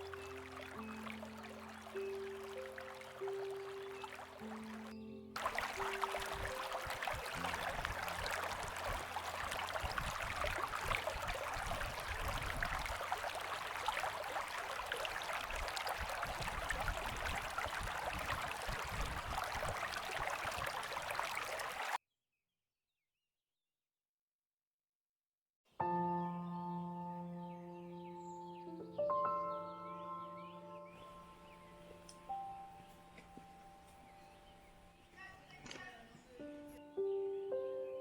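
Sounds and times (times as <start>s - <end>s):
stream water babbling: 0.0s - 22.0s.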